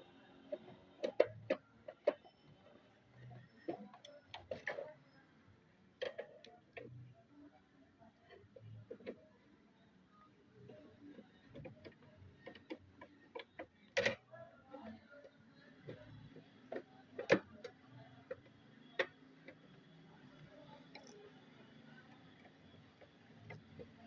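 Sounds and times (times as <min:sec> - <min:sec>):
computer parts clicking and tapping: 0:00.5 - 0:05.1, 0:10.6 - 0:24.0.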